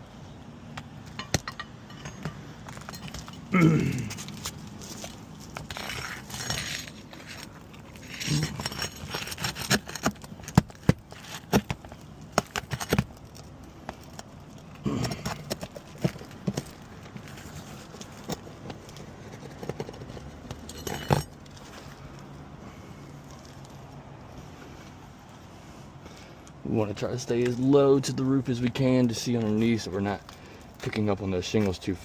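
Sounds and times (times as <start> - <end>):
metal tool scraping shingles: 4.0 - 11.8.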